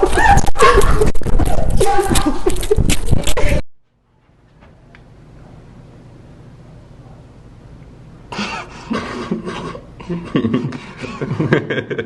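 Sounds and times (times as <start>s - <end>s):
coughing or laughing: 8.3s - 12.0s.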